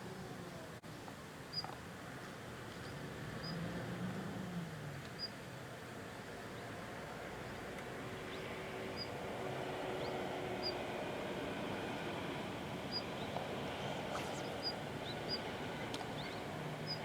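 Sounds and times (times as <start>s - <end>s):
small bird chirping: 12.9s - 15.4s.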